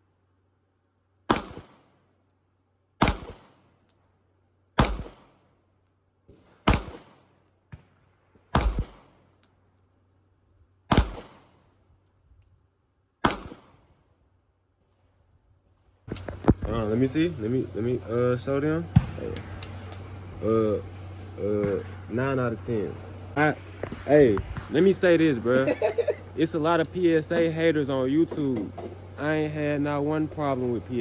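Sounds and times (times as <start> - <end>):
pistol shots with echo: 1.3 - 2.0, 3.0 - 3.8, 4.8 - 5.5, 6.4 - 7.4, 8.5 - 9.4, 10.9 - 11.7, 13.2 - 13.9.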